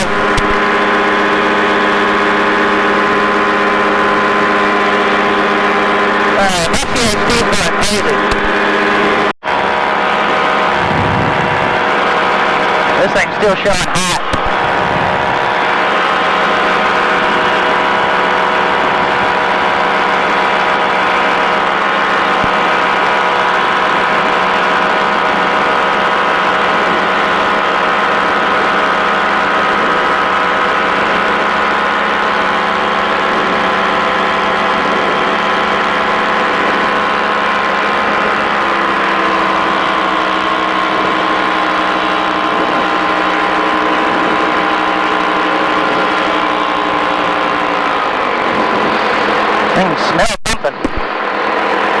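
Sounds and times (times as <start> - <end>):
ultralight aircraft engine drone: 0.0 - 52.0.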